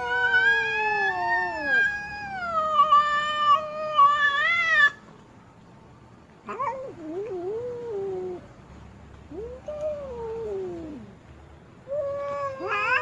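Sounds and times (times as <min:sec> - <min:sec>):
cat yowling: 0:00.0 - 0:05.0, 0:06.5 - 0:08.5, 0:09.3 - 0:11.1, 0:11.9 - 0:13.0.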